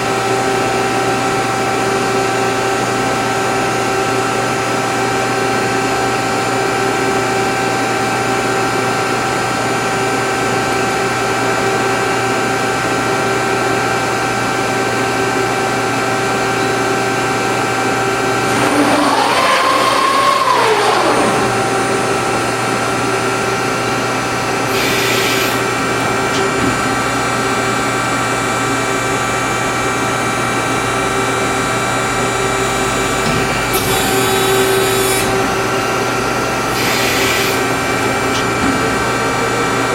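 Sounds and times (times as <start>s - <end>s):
hydraulic pump and motor hum: 14.1s - 39.9s
pitched whine: 17.4s - 39.9s.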